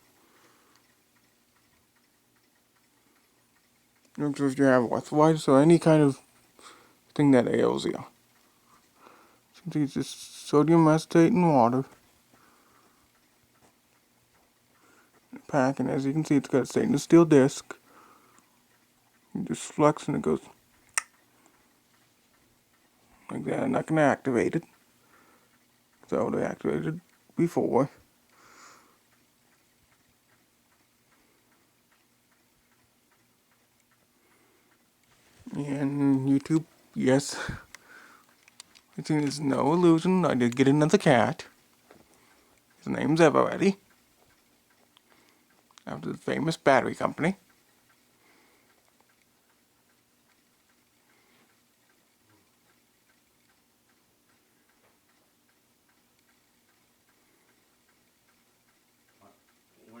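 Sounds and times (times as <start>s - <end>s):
faint regular ticking: 0.0s - 60.0s
steady low hum: 0.0s - 60.0s.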